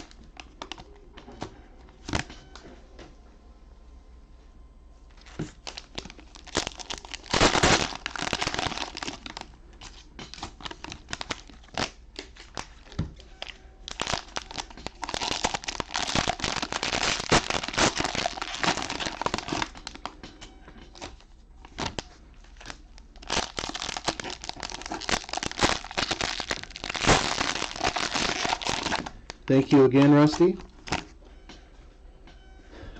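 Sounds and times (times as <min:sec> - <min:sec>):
plastic wrappers crinkling: 0:00.0 - 0:01.0, 0:05.1 - 0:20.2, 0:20.9 - 0:31.1.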